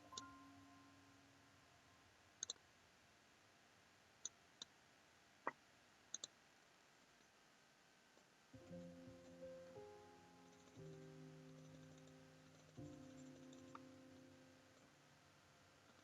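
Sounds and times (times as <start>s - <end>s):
computer mouse clicking: 2.4s - 2.6s, 6.1s - 6.3s.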